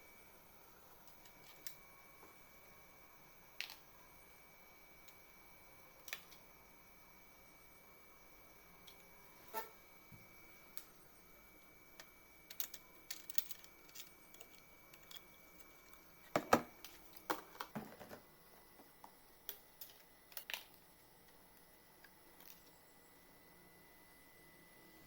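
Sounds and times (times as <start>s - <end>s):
computer parts clicking and tapping: 12.0s - 18.2s.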